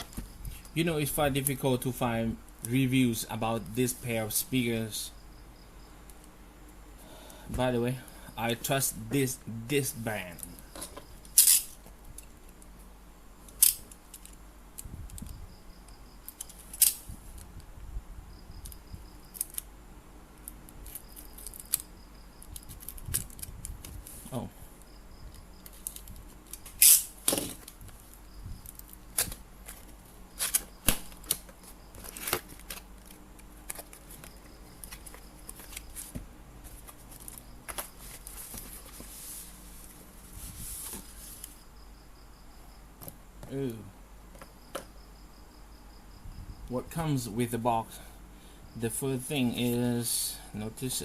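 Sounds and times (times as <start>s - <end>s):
packaging rustling: 28.7s - 39.7s.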